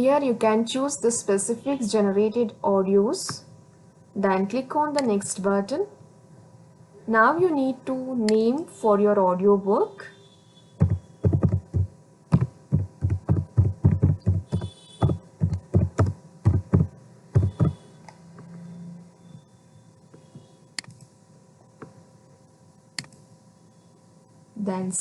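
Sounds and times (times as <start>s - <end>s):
faint steady hum: 0.0s - 25.0s
keyboard typing thumps: 10.8s - 17.8s
soft clicks: 23.0s - 23.3s.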